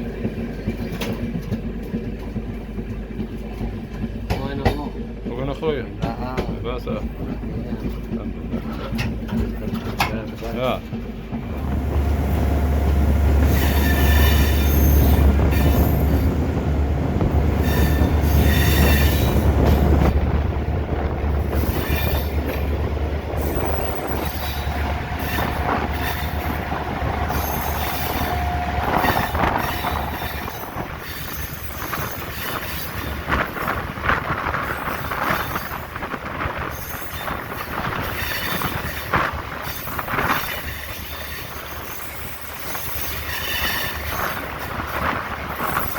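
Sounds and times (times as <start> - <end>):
train wheel squeal: 0.0 - 2.1, 11.7 - 20.3, 21.2 - 45.9
locomotive engine hum: 0.0 - 38.0
train wheels clattering: 0.0 - 45.9.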